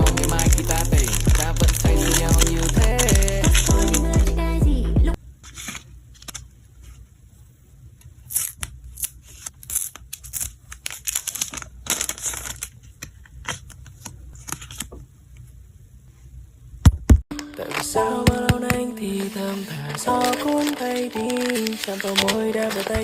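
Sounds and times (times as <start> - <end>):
packaging tearing and crinkling: 0.0 - 4.2, 8.2 - 14.9, 17.3 - 23.0.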